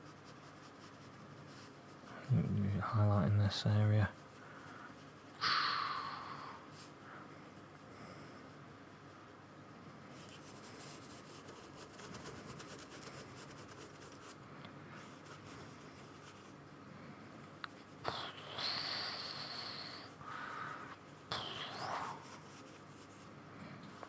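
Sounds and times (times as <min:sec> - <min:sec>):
paintbrush dabbing on paper: 0:00.0 - 0:05.4, 0:10.2 - 0:14.4.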